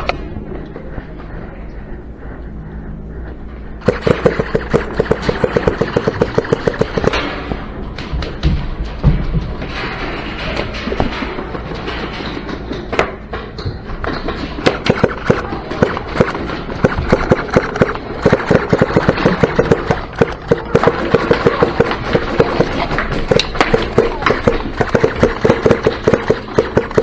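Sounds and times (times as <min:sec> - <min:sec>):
airsoft guns firing: 0:03.8 - 0:07.6, 0:14.5 - 0:27.0.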